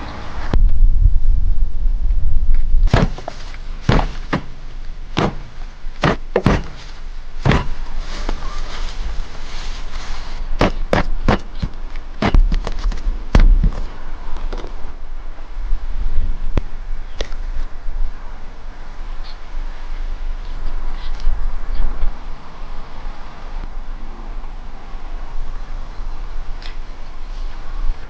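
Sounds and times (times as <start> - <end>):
low rumble: 0.0 - 10.6
sharp knocks and thuds: 2.9 - 4.6, 5.2 - 7.8, 10.6 - 13.9.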